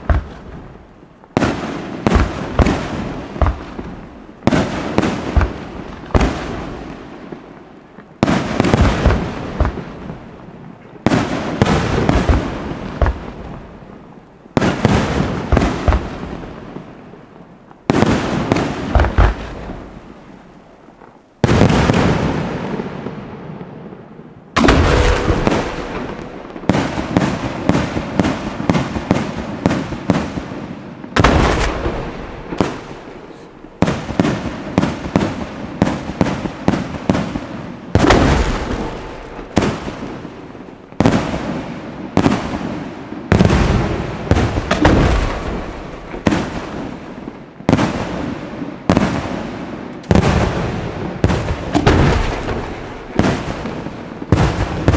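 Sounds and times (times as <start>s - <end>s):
fireworks bangs: 0.0s - 54.9s
echoing rumble and crackle: 23.6s - 27.6s.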